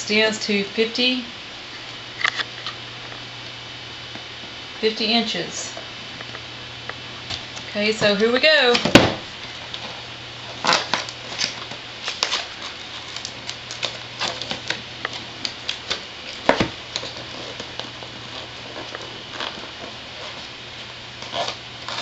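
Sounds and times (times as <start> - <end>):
sharp packaging snaps: 10.6 - 17.9.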